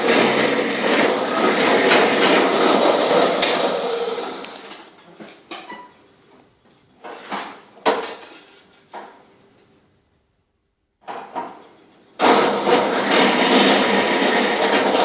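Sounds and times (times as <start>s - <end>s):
workshop power tool running: 0.0s - 4.9s, 12.2s - 15.0s
tools and wood clattering: 7.0s - 9.2s.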